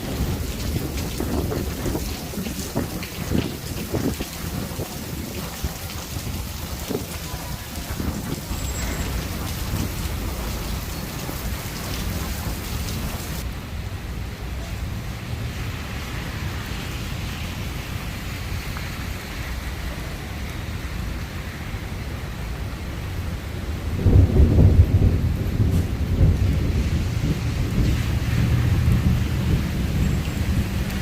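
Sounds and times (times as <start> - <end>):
thunder rumbling: 0.0 - 13.9, 23.5 - 31.0
steady rain falling: 0.0 - 31.0.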